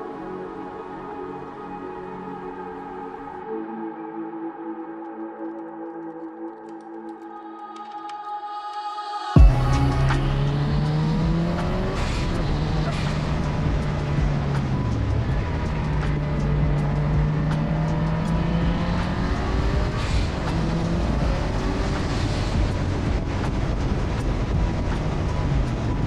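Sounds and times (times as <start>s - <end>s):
car engine revving: 9.4s - 26.0s
wind and road noise: 9.4s - 26.0s.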